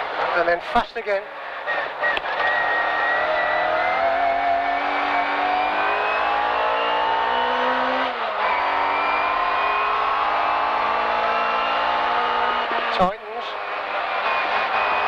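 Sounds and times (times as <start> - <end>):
car engine accelerating hard: 1.5 - 15.0.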